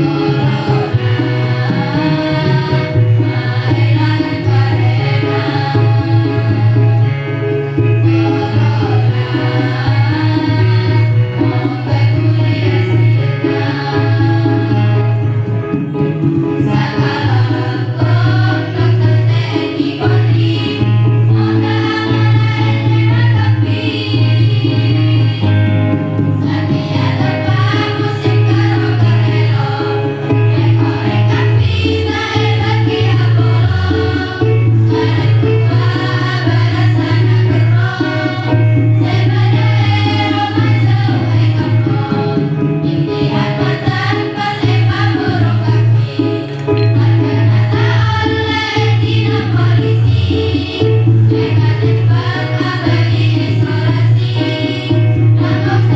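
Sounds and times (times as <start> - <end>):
choir singing: 0.0 - 7.2, 8.0 - 15.2, 16.6 - 55.9
percussion: 0.0 - 55.9
low bass accompaniment: 44.7 - 55.9.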